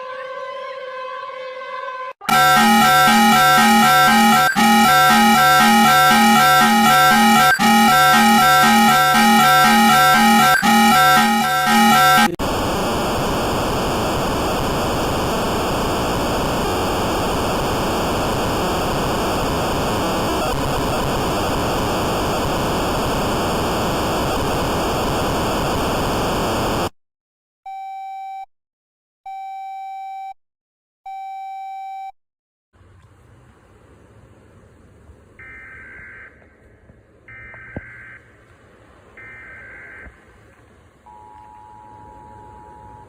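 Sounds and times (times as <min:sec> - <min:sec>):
harsh static with high whistle: 0:02.2 - 0:26.9
mid-pitched beeps: 0:02.3 - 0:12.4.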